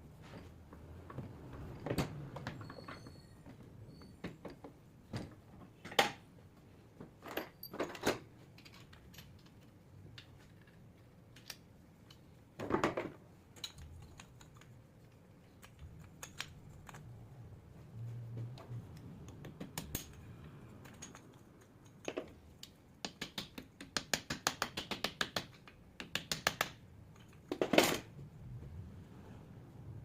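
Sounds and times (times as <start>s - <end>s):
metal parts and tools clinking: 7.2s - 12.4s, 13.4s - 17.2s, 19.7s - 22.8s.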